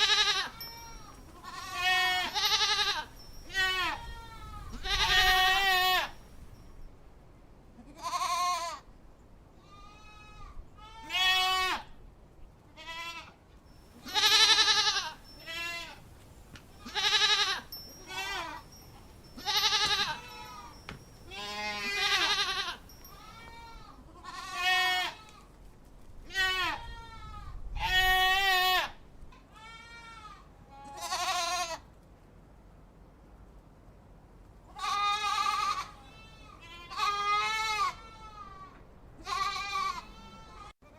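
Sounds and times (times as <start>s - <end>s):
goats bleating: 0.0s - 6.2s, 14.0s - 16.0s, 16.8s - 18.6s, 19.4s - 25.3s, 34.8s - 40.7s.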